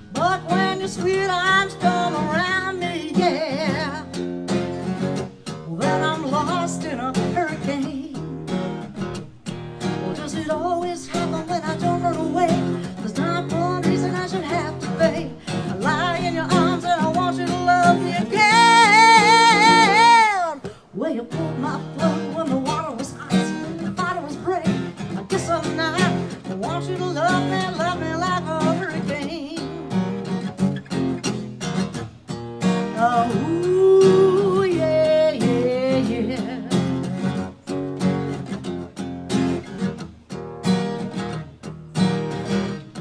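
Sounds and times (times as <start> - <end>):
person singing: 0.0 - 4.2, 5.6 - 8.6, 9.8 - 30.1, 32.8 - 37.4
acoustic guitar strumming: 0.0 - 43.0.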